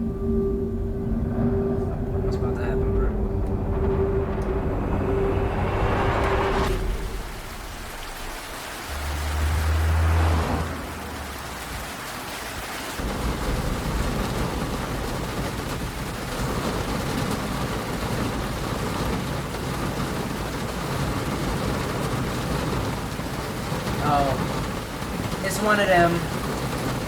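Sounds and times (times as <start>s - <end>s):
low rumble: 0.0s - 11.9s, 13.0s - 22.2s
heavy rain falling: 0.0s - 27.0s.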